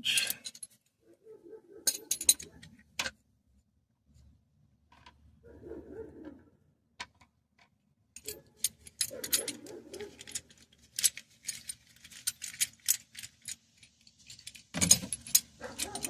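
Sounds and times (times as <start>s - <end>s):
metallic clicking of wrench: 14.5s - 16.0s.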